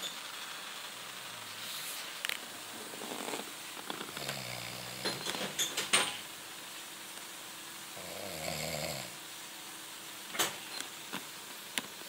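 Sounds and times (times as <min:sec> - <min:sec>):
low snores: 0:04.1 - 0:05.3, 0:08.0 - 0:09.2.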